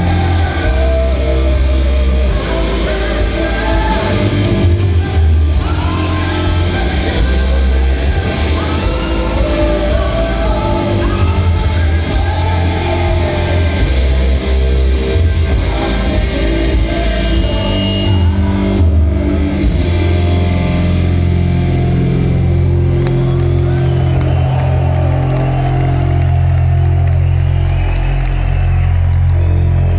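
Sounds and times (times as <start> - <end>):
person singing: 0.0 - 21.9
drums: 0.0 - 29.9
electric guitar: 0.0 - 29.9
heavy bass: 0.0 - 29.9.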